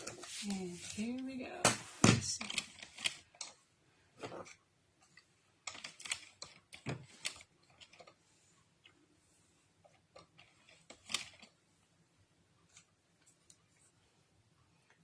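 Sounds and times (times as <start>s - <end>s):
knitting machine clicking: 2.3s - 3.6s, 5.6s - 8.2s, 9.8s - 11.6s.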